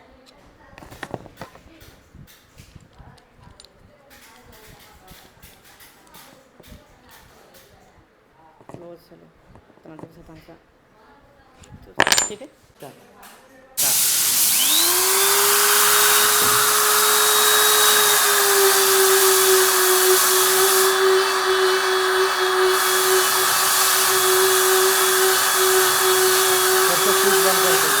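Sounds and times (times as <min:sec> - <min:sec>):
electric grinder motor whine: 0:13.8 - 0:28.0.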